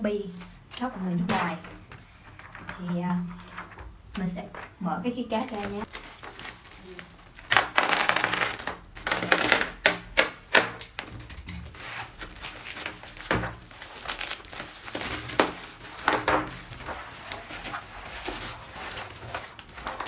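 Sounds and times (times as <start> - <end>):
packaging crinkling and rustling: 4.5 - 20.0.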